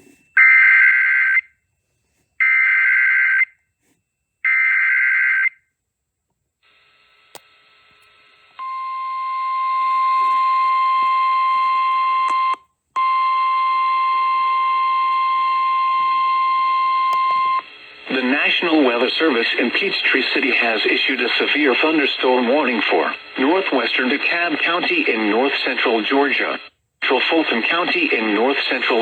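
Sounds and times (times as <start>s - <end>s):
radio hiss: 17.3s - 29.0s.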